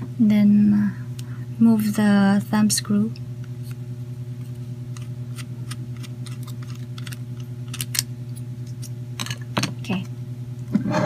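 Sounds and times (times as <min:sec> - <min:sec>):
low pulsing hum: 0:00.0 - 0:11.0.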